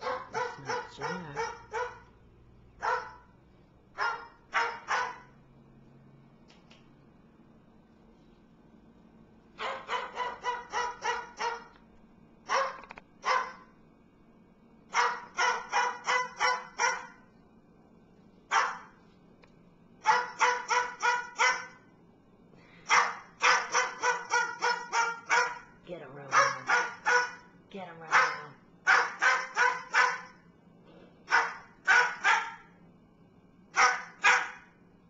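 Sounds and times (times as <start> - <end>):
bird imitating dog barking: 0.0 - 2.1, 9.6 - 11.7, 15.0 - 17.2, 20.1 - 21.8, 22.9 - 25.7, 26.3 - 27.4, 28.1 - 30.4.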